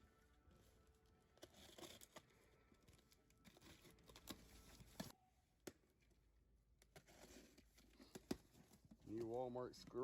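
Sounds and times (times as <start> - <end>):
faint clicks and rustles of packaging: 0.0 - 10.0.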